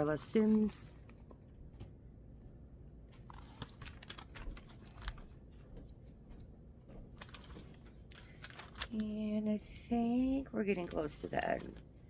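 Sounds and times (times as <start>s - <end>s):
magazine pages rustling: 3.1s - 9.3s, 10.6s - 12.0s.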